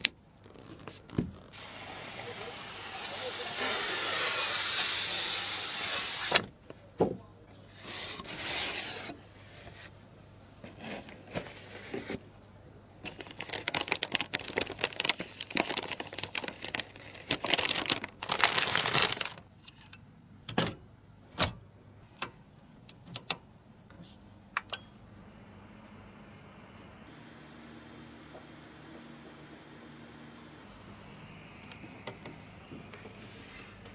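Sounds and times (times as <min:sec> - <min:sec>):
plastic packaging crinkling: 0:13.1 - 0:19.5.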